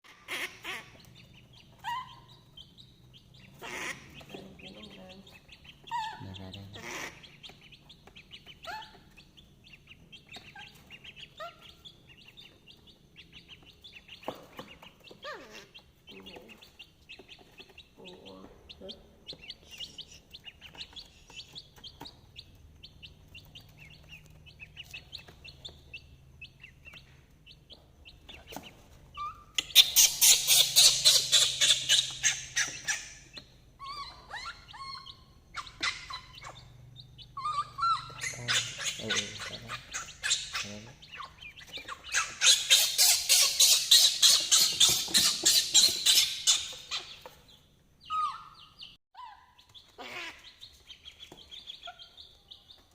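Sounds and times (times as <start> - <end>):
faint low hum: 0.1 - 30.2.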